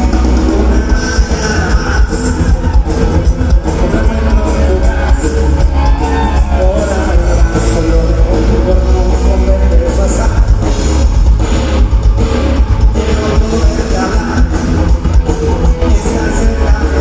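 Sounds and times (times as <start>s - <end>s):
person singing: 0.0s - 10.7s, 12.8s - 17.0s
live rock band playing: 0.0s - 17.0s.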